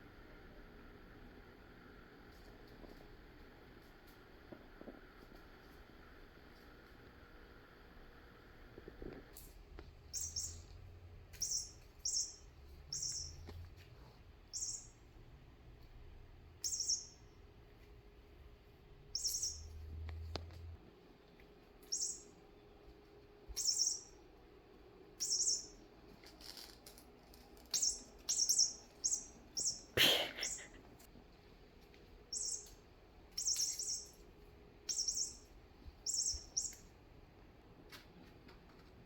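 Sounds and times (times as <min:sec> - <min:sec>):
high bird-like chirps: 0:10.1 - 0:13.6, 0:14.5 - 0:15.0, 0:16.6 - 0:17.4, 0:19.1 - 0:20.0, 0:21.8 - 0:22.4, 0:23.5 - 0:24.2, 0:25.2 - 0:25.9, 0:27.7 - 0:30.7, 0:32.3 - 0:34.2, 0:34.8 - 0:36.9.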